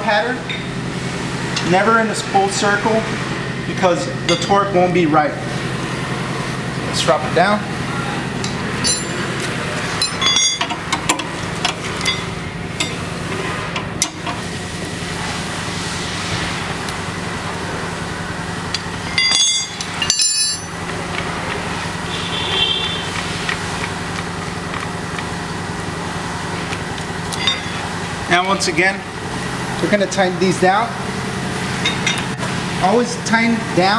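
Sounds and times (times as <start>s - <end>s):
steady mechanical hum: 0.0s - 33.9s
ringing metal clanks: 4.2s - 4.8s, 8.4s - 13.1s, 18.7s - 20.9s, 27.3s - 27.9s, 31.8s - 32.3s
metallic clicks of jack and tools: 8.4s - 9.2s, 10.0s - 13.0s, 18.7s - 21.6s.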